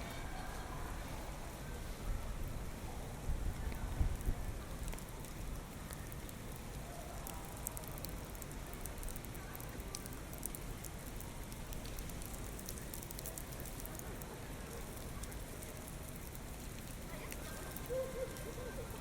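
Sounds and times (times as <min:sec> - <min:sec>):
low rumble of wind: 0:00.0 - 0:07.5
raindrops ticking on surfaces: 0:00.1 - 0:19.0.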